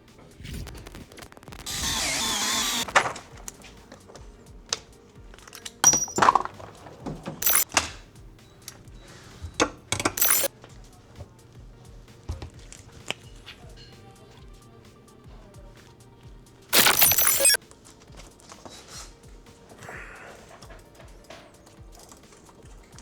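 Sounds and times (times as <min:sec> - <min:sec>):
noise bursts: 0:00.0 - 0:04.6, 0:06.6 - 0:13.4, 0:16.3 - 0:17.6
faint background music: 0:00.0 - 0:23.0
metal tools clinking: 0:05.3 - 0:11.5, 0:16.8 - 0:19.2.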